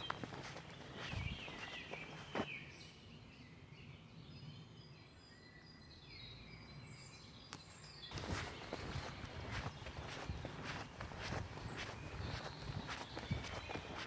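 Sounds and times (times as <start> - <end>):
rustling and scuffing: 0.0 - 2.6, 7.8 - 14.0
small birds chirping: 0.0 - 14.0.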